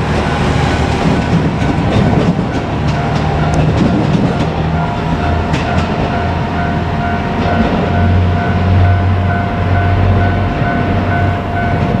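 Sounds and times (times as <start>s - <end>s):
train wheel clicks over rail joints: 0.0s - 6.4s
diesel railcar engine rumbling: 0.0s - 12.0s
level crossing bell ringing: 0.0s - 12.0s.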